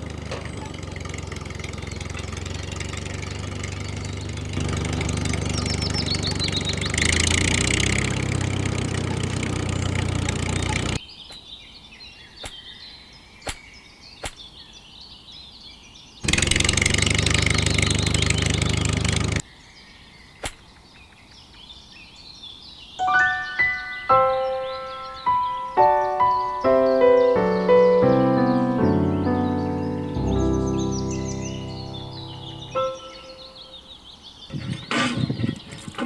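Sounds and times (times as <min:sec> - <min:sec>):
engine running: 0:00.0 - 0:11.0, 0:16.2 - 0:19.4, 0:27.0 - 0:33.1
birds chirping: 0:00.0 - 0:36.0
sharp clicks: 0:13.5 - 0:14.4, 0:20.4 - 0:20.7.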